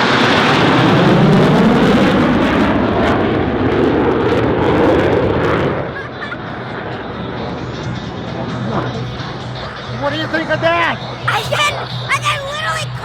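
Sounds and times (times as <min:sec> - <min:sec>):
jets passing overhead: 0:00.0 - 0:13.0.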